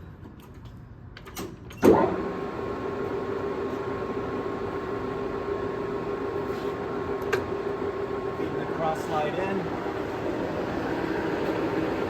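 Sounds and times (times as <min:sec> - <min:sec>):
lathe starting clunk: 0:01.8 - 0:03.9
lathe running hum and whine: 0:02.0 - 0:12.0.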